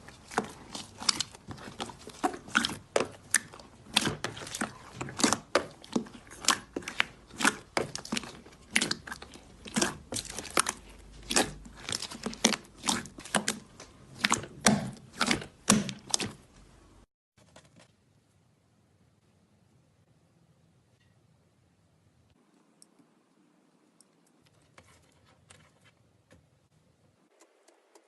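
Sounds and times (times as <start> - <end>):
slime popping and crackling: 0.1 - 16.4.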